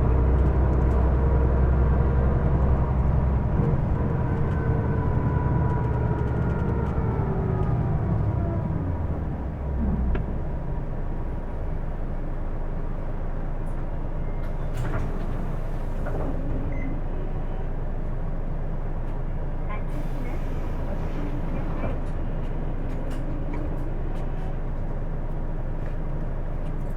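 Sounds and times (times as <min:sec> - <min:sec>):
bus drivetrain whine: 0:00.0 - 0:26.9
bus engine rumble: 0:00.0 - 0:26.9.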